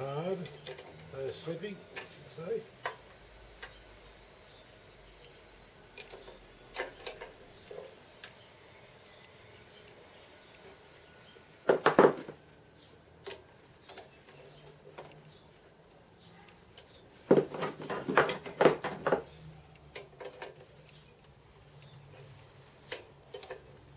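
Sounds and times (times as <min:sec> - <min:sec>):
metallic clicks and clinks: 0:00.4 - 0:01.2, 0:17.6 - 0:23.8
clattering knocks: 0:11.7 - 0:12.4, 0:17.3 - 0:19.3.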